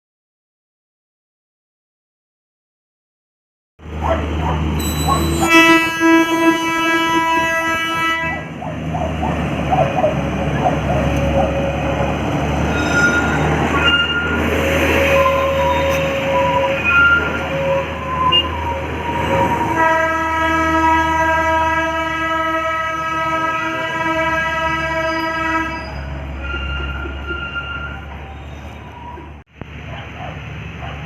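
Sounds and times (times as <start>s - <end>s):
train running: 3.8s - 31.0s
high wheel squeals: 4.4s - 7.4s, 10.0s - 19.8s, 25.0s - 29.4s
train horn blast: 4.7s - 8.6s, 12.7s - 28.0s.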